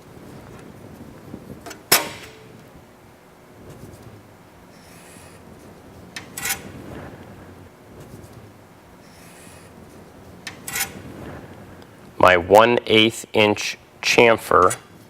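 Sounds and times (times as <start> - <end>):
faint scratching on sheet metal: 3.7 - 7.2, 8.0 - 11.4.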